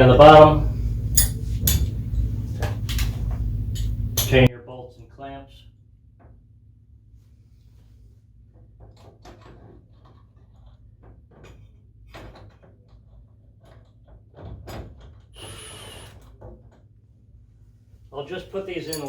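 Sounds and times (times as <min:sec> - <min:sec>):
steady low hum: 0:00.0 - 0:08.5
metal parts clicking and clinking: 0:01.1 - 0:02.0, 0:02.6 - 0:04.5.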